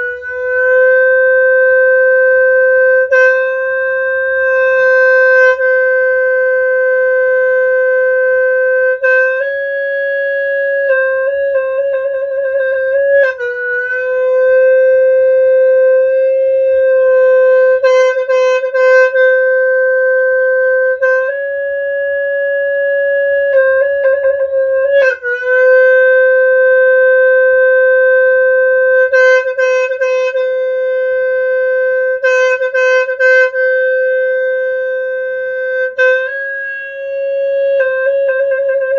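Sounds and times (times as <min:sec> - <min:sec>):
free-reed horn long notes: 0:12.6 - 0:24.1.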